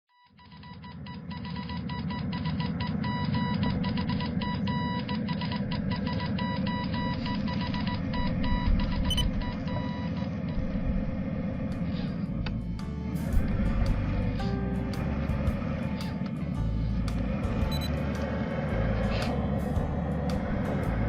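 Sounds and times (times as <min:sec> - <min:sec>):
fast electronic beeping: 0:00.4 - 0:10.3, 0:17.7 - 0:18.0
steady low rumble: 0:02.1 - 0:21.0
background music: 0:12.2 - 0:21.0.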